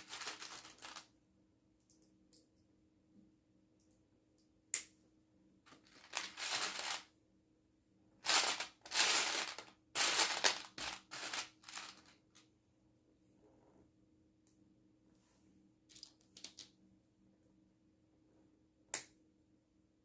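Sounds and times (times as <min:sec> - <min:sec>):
plastic lego pieces rattling: 0:00.0 - 0:01.0, 0:05.7 - 0:07.0, 0:08.2 - 0:12.1.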